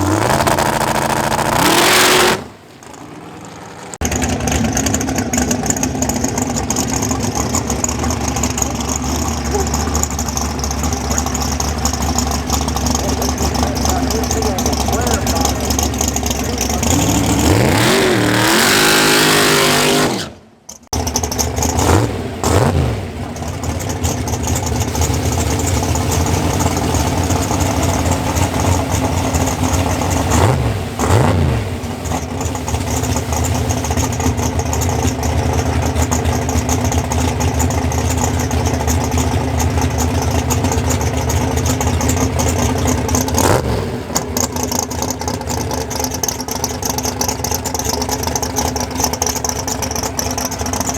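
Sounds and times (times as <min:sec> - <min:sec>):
race engine revving and idling: 0:00.0 - 0:50.9.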